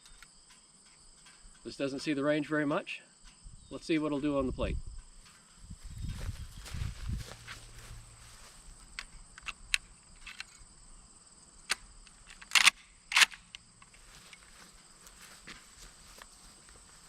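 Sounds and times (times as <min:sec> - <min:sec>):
rifle shots: 0:12.5 - 0:13.4.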